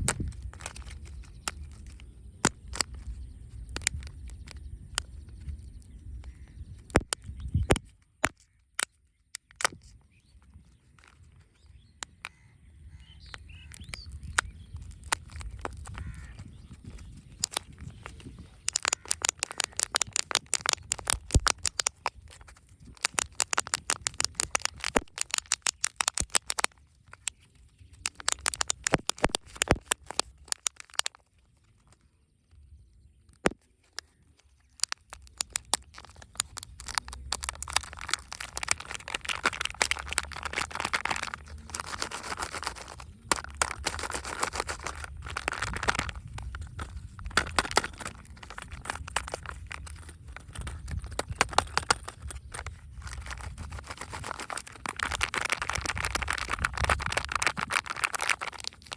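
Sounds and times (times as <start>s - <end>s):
packaging crinkling: 13.6s - 31.3s, 33.4s - 58.9s.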